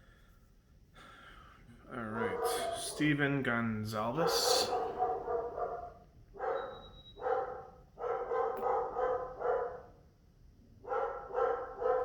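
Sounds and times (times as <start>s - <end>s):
dog barking: 2.1s - 3.1s, 4.2s - 10.0s, 10.8s - 12.0s.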